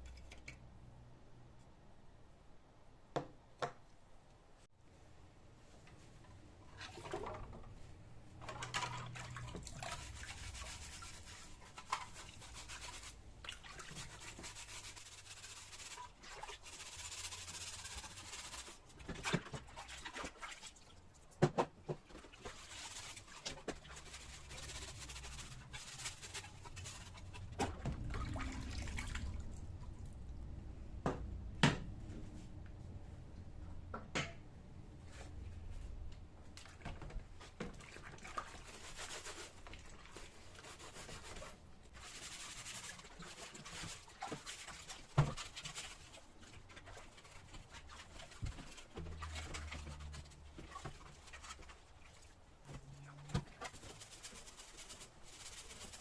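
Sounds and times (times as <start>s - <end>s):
rubbing and scraping: 8.4s - 20.4s, 21.9s - 30.1s, 37.4s - 56.0s
low steady hum: 24.4s - 36.6s.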